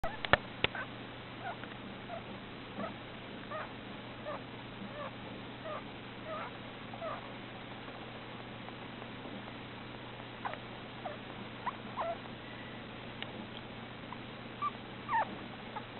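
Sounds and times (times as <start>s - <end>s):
hamster squeaking: 0.0s - 7.3s, 10.4s - 12.7s, 14.1s - 15.9s.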